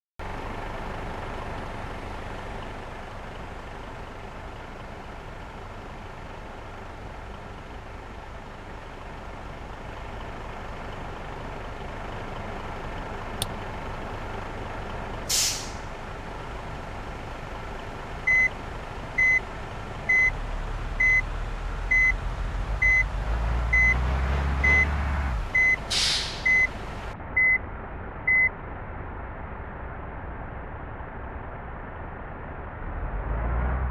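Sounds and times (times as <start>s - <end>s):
bus engine running: 0.2s - 33.9s
air brake hiss: 15.3s - 16.0s, 25.6s - 27.0s
reversing alarm beeps: 18.3s - 18.5s, 20.1s - 20.3s, 21.0s - 21.2s, 21.9s - 22.2s, 22.8s - 23.1s, 23.7s - 24.0s, 25.6s - 25.8s, 26.4s - 26.7s.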